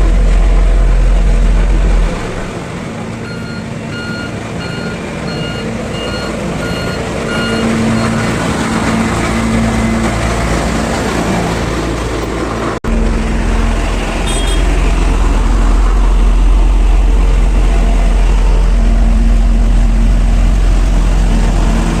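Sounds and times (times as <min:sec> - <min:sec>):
deep low rumble: 0:00.0 - 0:02.6, 0:12.8 - 0:22.0
road roller diesel engine: 0:00.0 - 0:22.0
reverse alarm beeping: 0:03.2 - 0:08.2.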